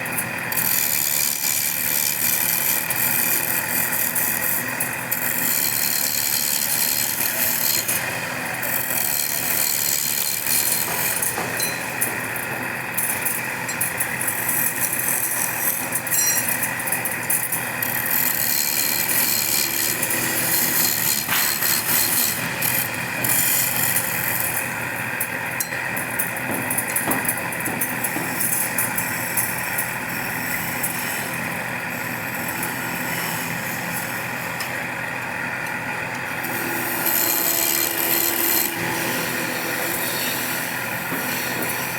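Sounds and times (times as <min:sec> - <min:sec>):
power tool cutting wood: 0:00.0 - 0:27.3, 0:28.0 - 0:41.9.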